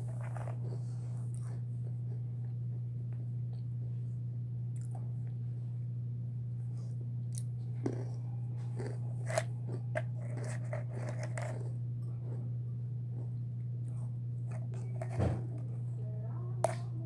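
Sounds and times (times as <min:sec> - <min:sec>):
chewing with crunches: 0:00.0 - 0:03.7, 0:06.7 - 0:15.8
low hum: 0:00.0 - 0:17.0.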